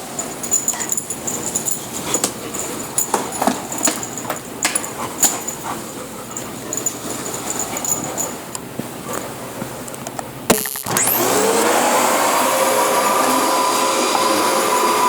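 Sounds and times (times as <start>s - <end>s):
vacuum cleaner running: 10.5s - 15.0s.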